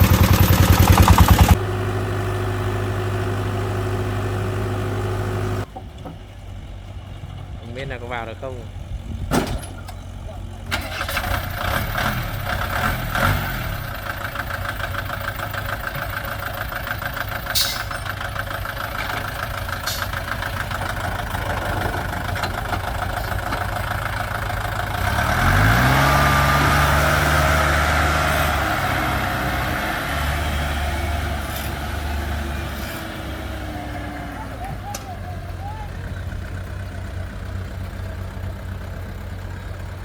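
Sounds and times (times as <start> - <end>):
deeper engine revving up: 0.0 - 5.7, 10.2 - 14.3, 19.3 - 39.4
diesel engine chugging: 0.0 - 40.0.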